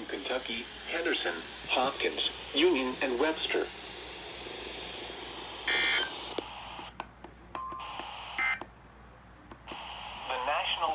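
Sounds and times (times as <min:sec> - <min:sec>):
radio hiss: 0:00.0 - 0:06.9, 0:07.9 - 0:08.6, 0:09.6 - 0:10.9
clicks: 0:09.5 - 0:09.9.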